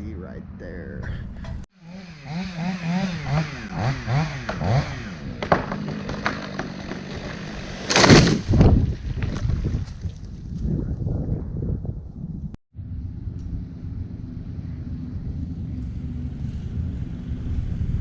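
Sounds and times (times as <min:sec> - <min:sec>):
chainsaw engine revving: 0:01.8 - 0:08.6.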